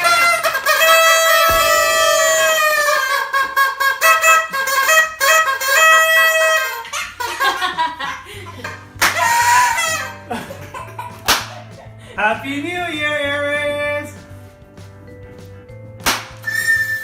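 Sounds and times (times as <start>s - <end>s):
toy party horns honking: 0.0s - 7.7s, 9.0s - 10.2s, 16.4s - 17.0s.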